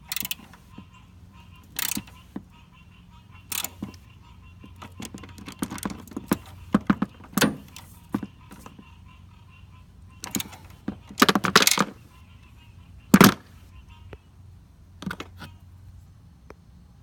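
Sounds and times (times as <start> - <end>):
ratchet and sockets clicking: 0.0 - 0.8, 1.6 - 2.4, 3.5 - 4.0, 4.8 - 8.8, 10.2 - 12.0
metal tool clank: 5.1 - 7.9, 11.2 - 12.0.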